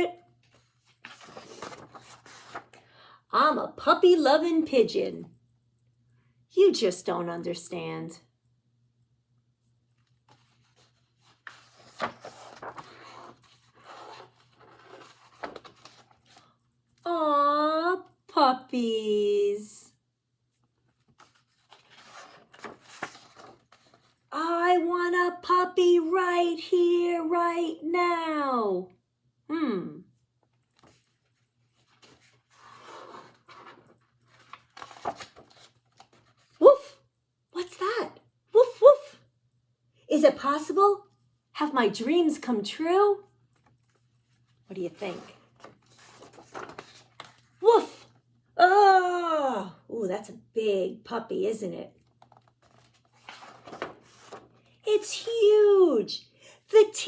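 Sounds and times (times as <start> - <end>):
paper pages rustling and turning: 0.4 - 2.9, 10.0 - 16.6, 20.6 - 24.3, 30.5 - 36.6, 43.6 - 47.6, 52.0 - 54.8.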